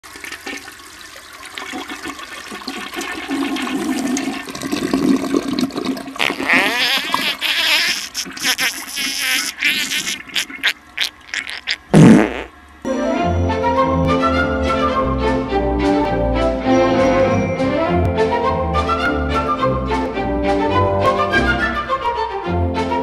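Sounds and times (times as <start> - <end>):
rushing gurgling water: 0.1 - 12.8.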